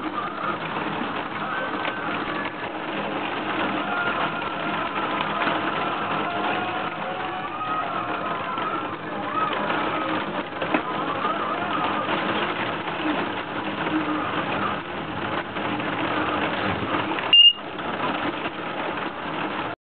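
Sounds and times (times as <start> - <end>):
background noise: 0.0 - 19.8
high electronic beep: 17.3 - 17.6.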